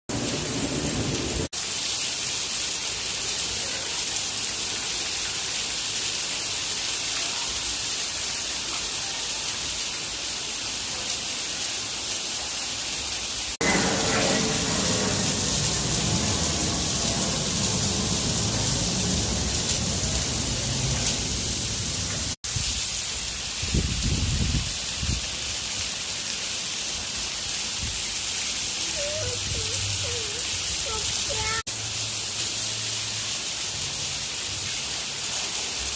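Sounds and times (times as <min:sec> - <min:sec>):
rain falling: 0:00.1 - 0:35.9.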